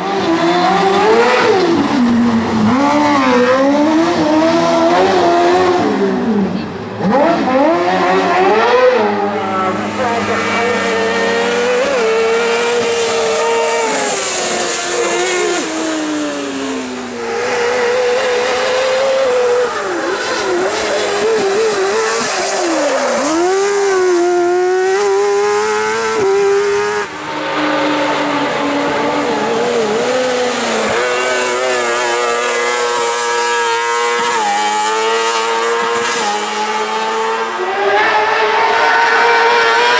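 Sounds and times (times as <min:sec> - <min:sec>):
racing buggy engine revving: 0:00.0 - 0:39.9.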